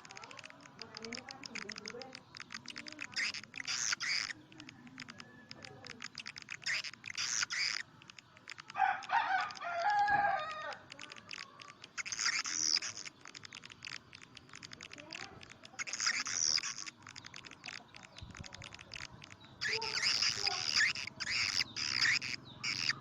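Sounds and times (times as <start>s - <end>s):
buzzy high twittering chirps: 0.0s - 23.0s
fast dry clicks: 0.0s - 23.0s
lower pitched bird call: 15.7s - 23.0s.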